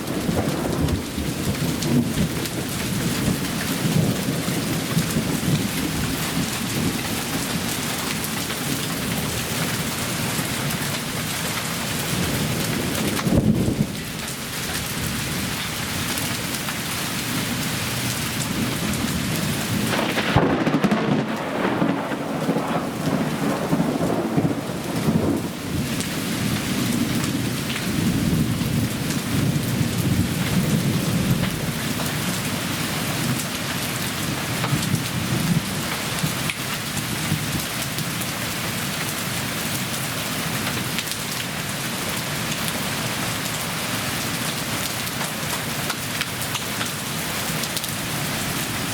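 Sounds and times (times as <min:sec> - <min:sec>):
low thunder rumble: 0:00.0 - 0:07.8, 0:18.6 - 0:31.8
hail and rain pounding: 0:00.0 - 0:48.9.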